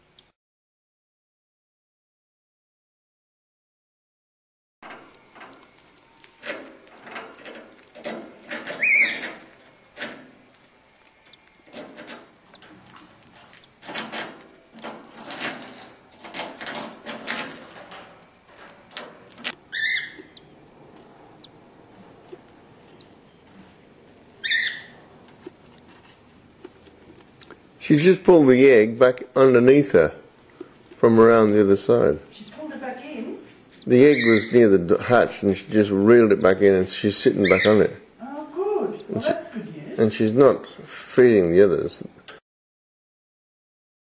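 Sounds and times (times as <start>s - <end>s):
birds rustling in nest: 4.8s - 34.6s.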